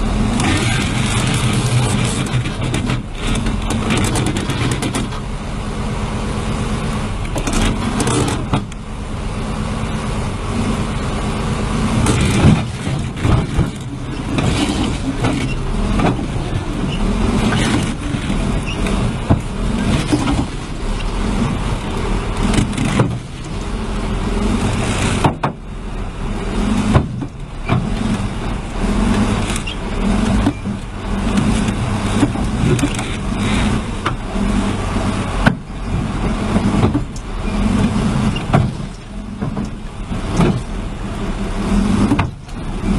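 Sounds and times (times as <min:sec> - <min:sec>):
heavy machinery engine running: 0:00.0 - 0:42.9
knocks and clanks: 0:00.4 - 0:05.2, 0:12.0 - 0:16.5, 0:22.4 - 0:23.3, 0:25.0 - 0:25.6, 0:26.8 - 0:28.2, 0:35.4 - 0:40.7, 0:41.9 - 0:42.6.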